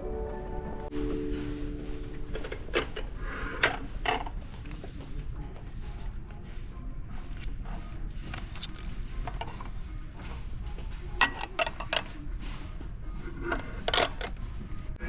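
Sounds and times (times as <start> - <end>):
store hum: 0.0 - 15.0
tableware clinking: 1.3 - 4.4, 9.2 - 9.8, 11.2 - 12.2, 13.2 - 14.4.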